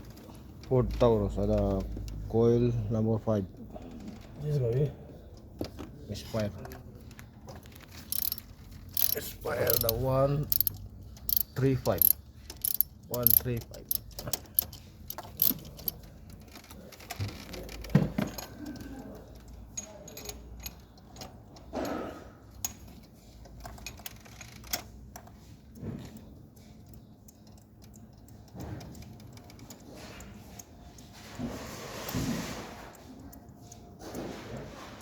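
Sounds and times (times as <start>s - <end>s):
hand tools clicking and clinking: 6.5s - 31.4s.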